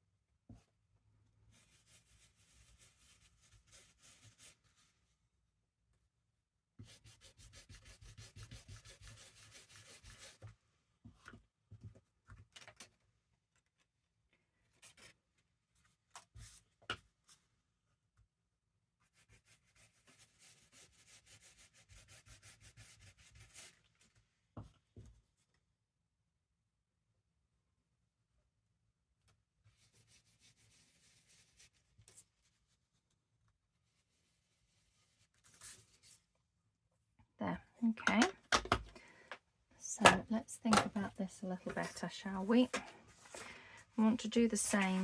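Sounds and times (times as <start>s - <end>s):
rubbing strokes on paper: 1.5s - 5.1s, 6.8s - 10.5s, 19.0s - 24.1s, 29.7s - 33.0s, 33.8s - 36.2s.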